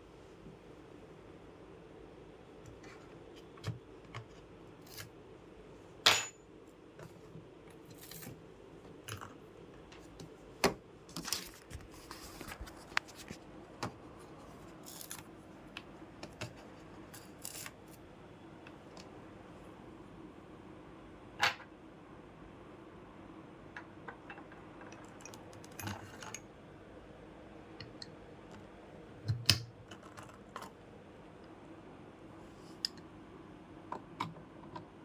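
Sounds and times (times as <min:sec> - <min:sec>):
faint steady hum: 0:00.0 - 0:35.0.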